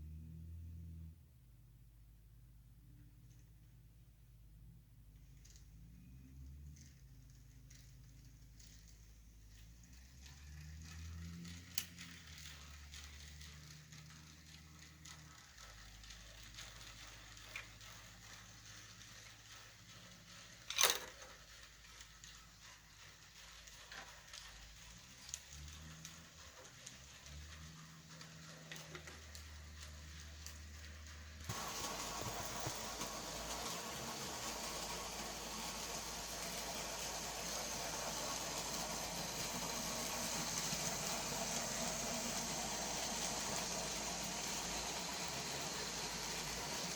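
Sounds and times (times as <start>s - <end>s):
model train motor hum: 6.8s - 46.9s
steady hiss: 21.4s - 46.9s.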